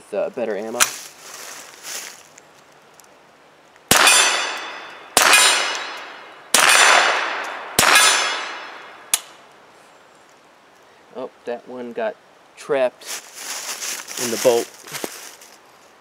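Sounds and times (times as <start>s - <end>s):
rifle shots: 3.9s - 9.0s
steel plate clanging: 4.0s - 6.1s.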